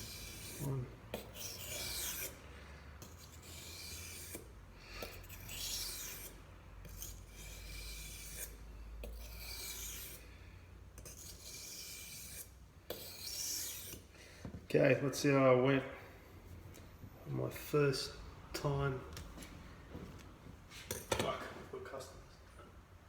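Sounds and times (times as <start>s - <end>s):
knife rasping on wet stone: 0.0s - 10.3s, 11.0s - 14.1s.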